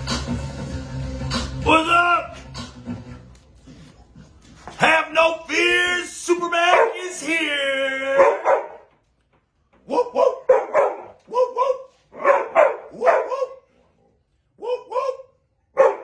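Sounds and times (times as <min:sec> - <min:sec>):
dog barking: 0:06.7 - 0:07.2, 0:08.1 - 0:08.9, 0:09.8 - 0:13.8, 0:14.6 - 0:16.0.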